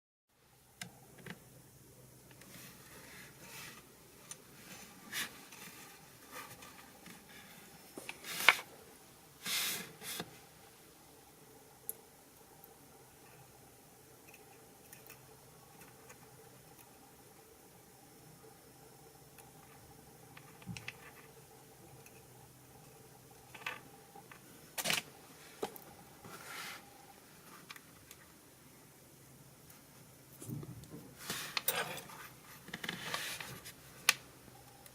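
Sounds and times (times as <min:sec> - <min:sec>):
soft rustling of plastic parts: 0:00.7 - 0:11.0, 0:11.7 - 0:18.0, 0:19.3 - 0:28.5, 0:29.3 - 0:34.9
scraping rustle: 0:31.2 - 0:33.8.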